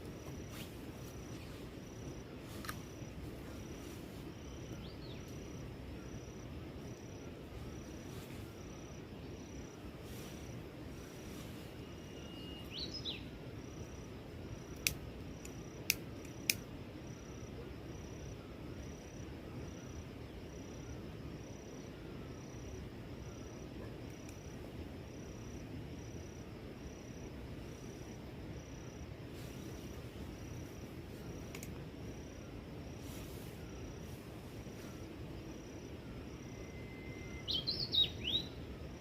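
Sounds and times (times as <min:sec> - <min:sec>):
insect chirping: 0:00.0 - 0:39.0
sharp clicks: 0:14.7 - 0:16.6.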